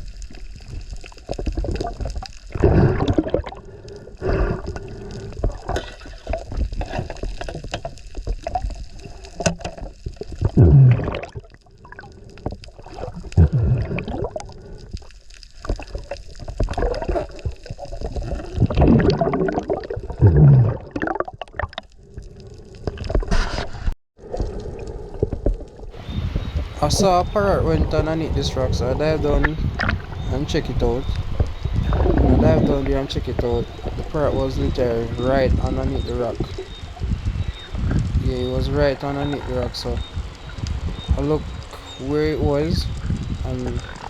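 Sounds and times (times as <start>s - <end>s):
water gurgling and sloshing: 0.0s - 44.0s
small clicks: 31.0s - 44.0s.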